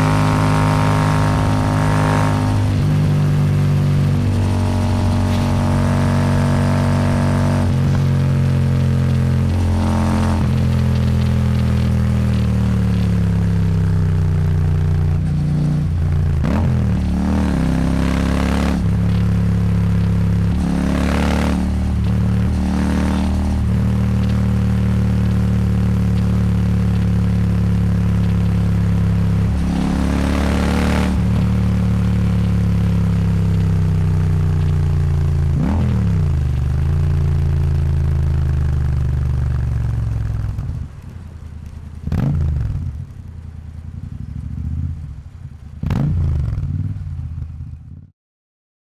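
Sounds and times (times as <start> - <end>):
motorcycle engine: 0.0 - 48.1.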